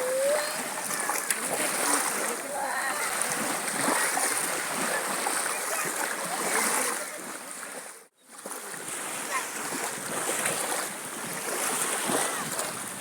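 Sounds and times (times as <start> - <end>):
voices: 0.0 - 7.9
sea water splashing: 0.0 - 13.0.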